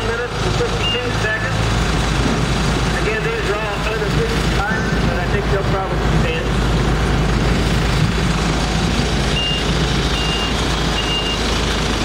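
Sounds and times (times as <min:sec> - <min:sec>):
heavy machine engine running: 0:00.0 - 0:12.0
reversing alarm beeps: 0:00.8 - 0:01.1, 0:09.3 - 0:11.5.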